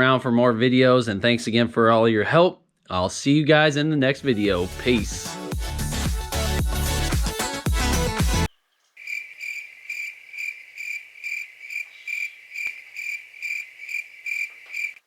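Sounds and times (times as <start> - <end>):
cricket chirping: 8.9 - 15.0.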